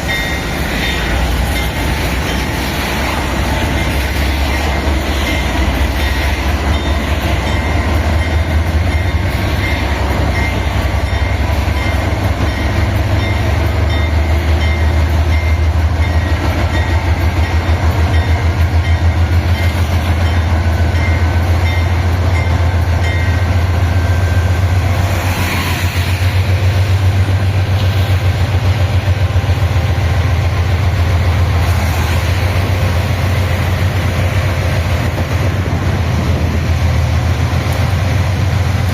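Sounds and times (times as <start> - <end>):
freight train drone: 0.0 - 38.9.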